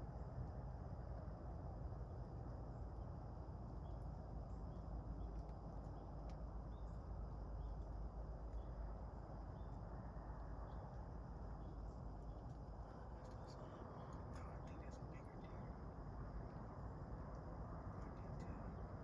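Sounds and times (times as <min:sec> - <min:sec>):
faint high hum: 0:00.0 - 0:19.0
faint bird chirps: 0:03.8 - 0:19.0
low rumble: 0:04.6 - 0:19.0.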